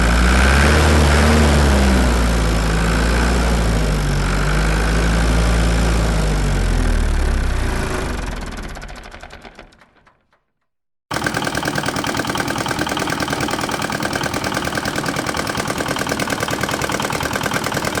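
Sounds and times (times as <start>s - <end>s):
another engine: 11.1s - 18.0s
tractor engine pulsing: 11.1s - 18.0s.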